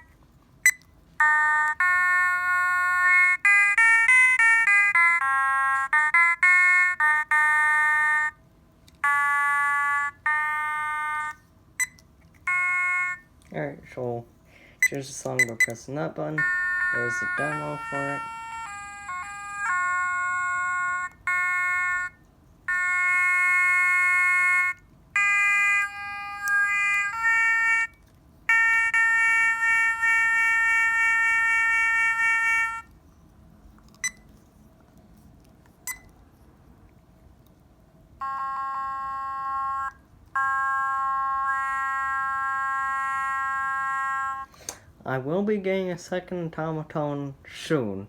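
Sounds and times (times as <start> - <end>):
electronic tone melody: 0.7 - 8.4, 9.0 - 13.3, 16.4 - 32.9, 38.2 - 44.5.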